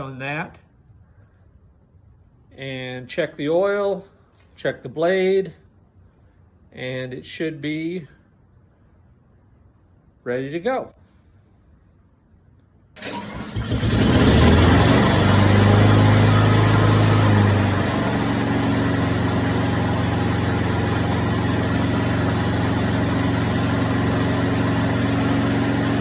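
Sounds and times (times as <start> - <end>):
lawnmower engine running: 13.0 - 26.0.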